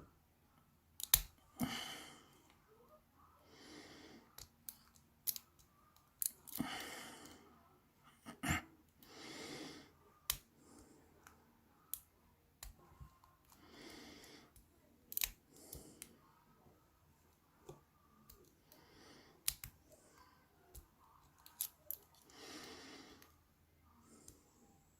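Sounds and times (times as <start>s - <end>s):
soft breaths: 1.3s - 24.9s
lock picks clicking in padlock: 4.7s - 6.6s.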